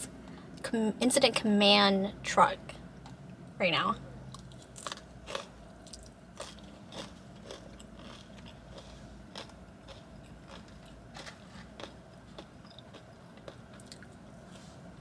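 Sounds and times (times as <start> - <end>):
chewing fries: 4.3 - 15.0.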